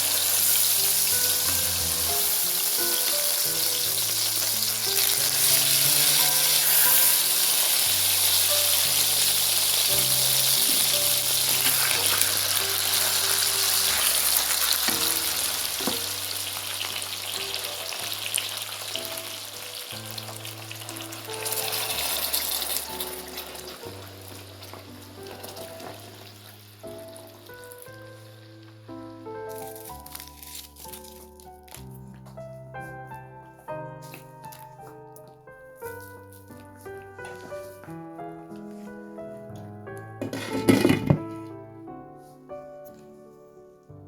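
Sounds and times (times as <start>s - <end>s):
background music with bass notes: 0.0s - 6.6s
food sizzling in a frying pan: 0.0s - 30.6s.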